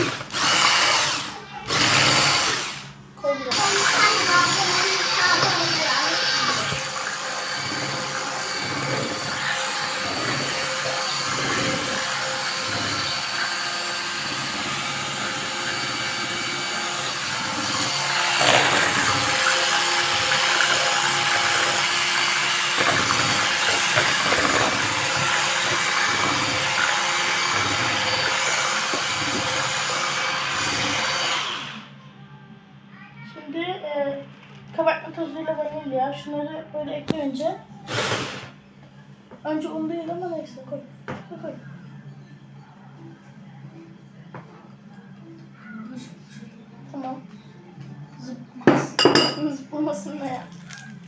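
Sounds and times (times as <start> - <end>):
electric mixer whisking batter: 0.0 - 31.9, 37.8 - 38.6.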